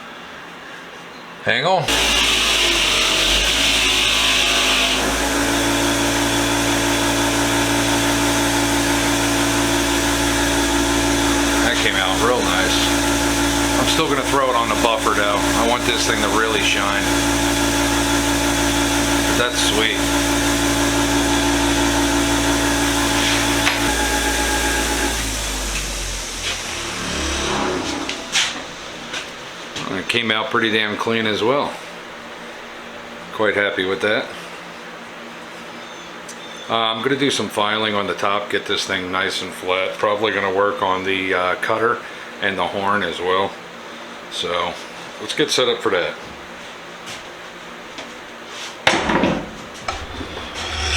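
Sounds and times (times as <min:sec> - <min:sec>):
wire wheel motor hum: 0:01.9 - 0:30.1, 0:49.9 - 0:50.9
wire wheel scratching metal: 0:49.9 - 0:50.9.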